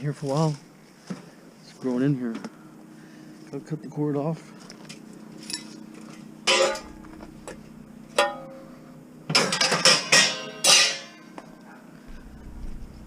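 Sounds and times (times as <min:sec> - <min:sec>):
metal pieces clanking: 0:06.5 - 0:07.6, 0:09.3 - 0:11.3.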